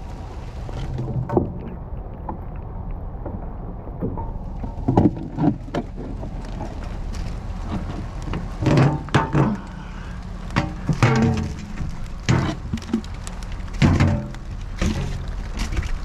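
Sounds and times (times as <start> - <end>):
steady low rumble: 0.0 - 16.0
knocks and clatter of items: 4.0 - 9.8, 10.5 - 16.0.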